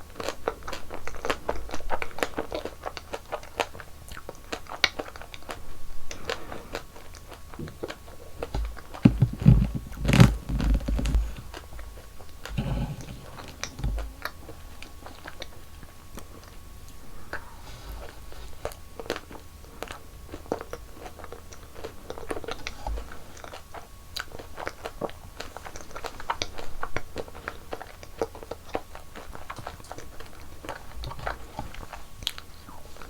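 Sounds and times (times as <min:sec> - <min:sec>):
wet chewing clicks: 0:00.0 - 0:33.0
deep thumps: 0:08.5 - 0:14.7.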